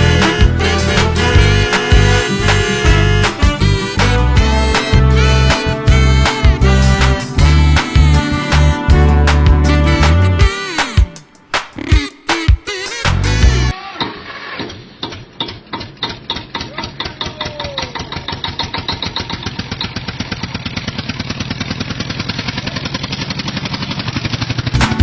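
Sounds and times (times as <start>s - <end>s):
engine starting and running: 0.0s - 8.7s, 13.7s - 25.0s.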